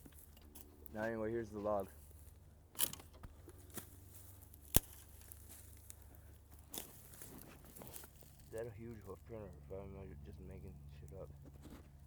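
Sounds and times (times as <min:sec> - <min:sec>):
footsteps on dry leaves: 0:00.0 - 0:02.6, 0:03.3 - 0:09.2
twig snapping: 0:02.8 - 0:08.0.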